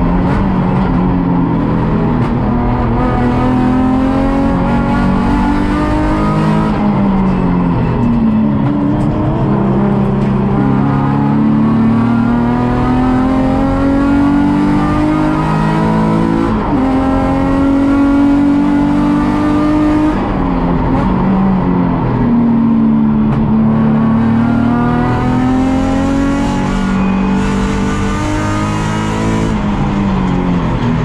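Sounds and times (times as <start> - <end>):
race car engine revving: 0.0 - 31.0.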